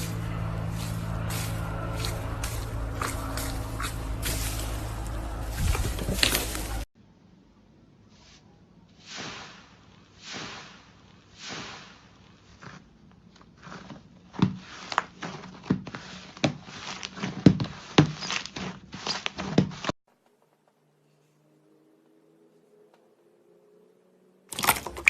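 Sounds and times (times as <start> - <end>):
slime squishing: 10.2 - 19.9.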